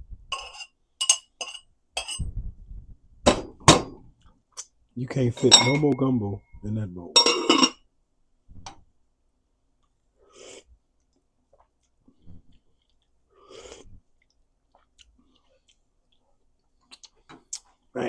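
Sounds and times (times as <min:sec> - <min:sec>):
chewing and slurping: 0:11.5 - 0:17.8.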